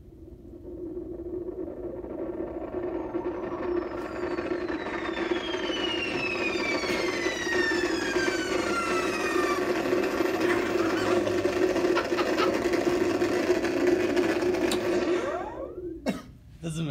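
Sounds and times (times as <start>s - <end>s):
synthesizer falling whistle tone: 0.0s - 11.7s, 14.9s - 16.0s
synthesizer upward sweep: 0.0s - 16.0s
synthesizer engine-like drone: 0.0s - 16.2s.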